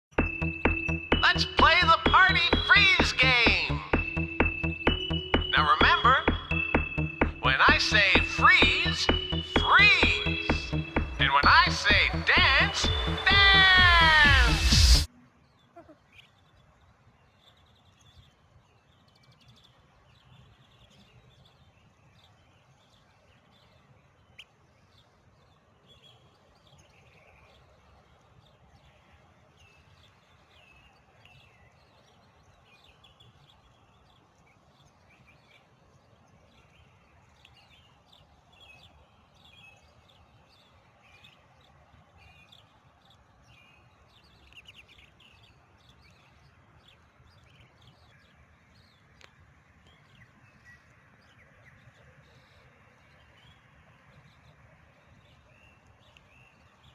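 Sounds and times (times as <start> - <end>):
small birds chirping: 0.0 - 56.9.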